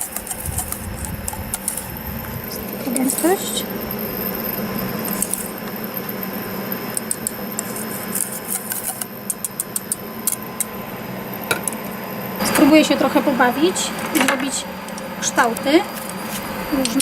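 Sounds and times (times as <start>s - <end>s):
spoon scraping in batter bowl: 0.0s - 3.7s, 6.9s - 10.7s, 15.8s - 17.0s
steady background hum: 0.0s - 17.0s.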